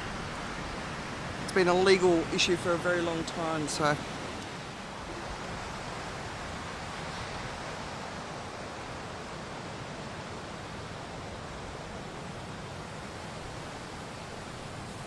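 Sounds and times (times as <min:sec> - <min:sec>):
surf washing onto beach: 0:00.0 - 0:15.0.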